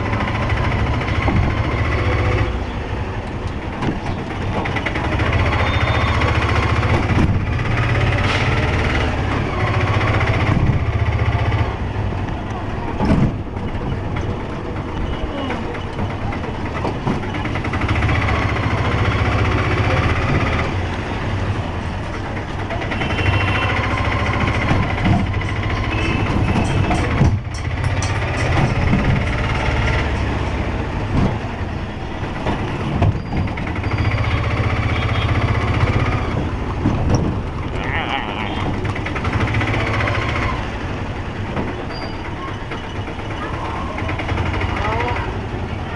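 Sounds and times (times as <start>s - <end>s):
auto-rickshaw engine humming: 0.0s - 45.9s
sharp knocks: 26.2s - 29.7s.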